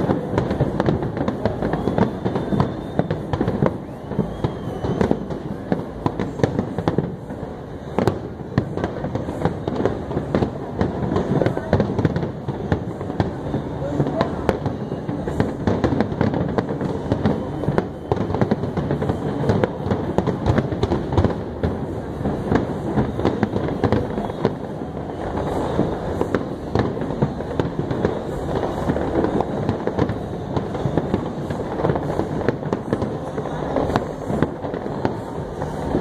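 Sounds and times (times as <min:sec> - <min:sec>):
fireworks cracks and bangs: 0:00.0 - 0:36.0.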